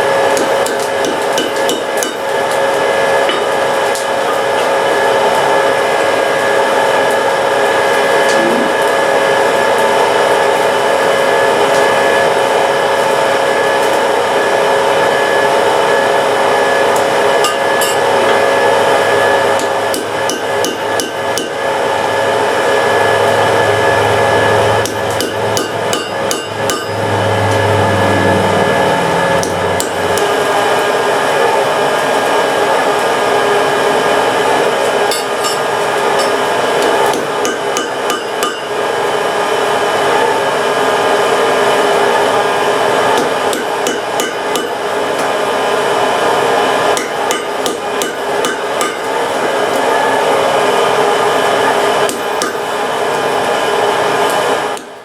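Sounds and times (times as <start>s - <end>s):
hammer striking iron on anvil: 0.0s - 2.5s, 3.2s - 4.4s, 17.4s - 18.4s, 19.5s - 21.8s, 24.8s - 27.2s, 29.4s - 30.4s, 35.1s - 38.8s, 43.2s - 44.9s, 46.9s - 49.2s, 52.1s - 52.7s
forge blower hum: 0.0s - 55.0s.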